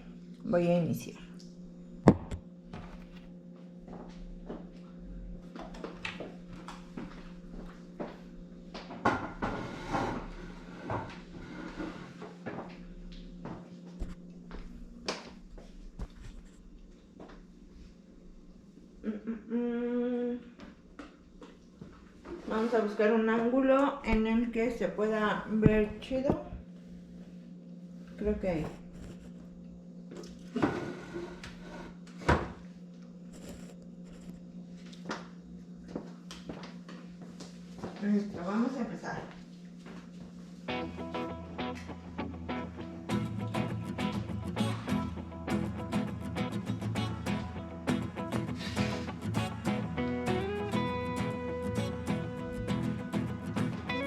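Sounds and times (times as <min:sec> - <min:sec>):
steady low hum: 0:00.0 - 0:54.0
low hum: 0:23.9 - 0:32.0.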